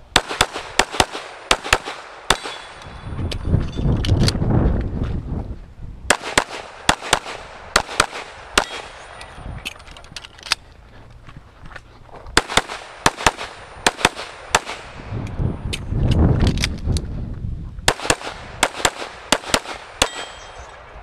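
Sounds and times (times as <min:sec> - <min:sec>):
pistol shots: 0:00.1 - 0:02.9, 0:06.1 - 0:09.3, 0:12.4 - 0:15.1, 0:17.9 - 0:21.0
low rumbling noise: 0:02.1 - 0:21.0.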